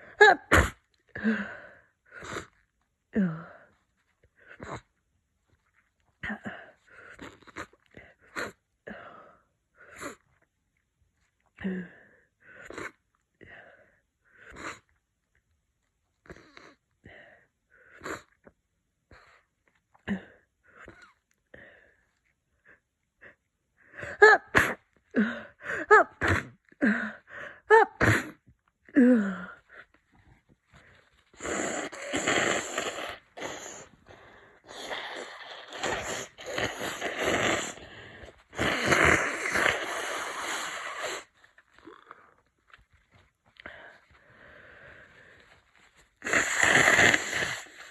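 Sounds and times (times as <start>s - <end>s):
congested sneezes: 0.0s - 0.9s, 24.2s - 24.9s, 25.8s - 26.6s, 27.8s - 28.4s, 31.4s - 41.4s, 46.2s - 47.9s
breathing through blocked nose: 30.8s - 41.4s, 43.6s - 47.9s
person sniffing: 31.3s - 41.5s, 43.8s - 47.9s.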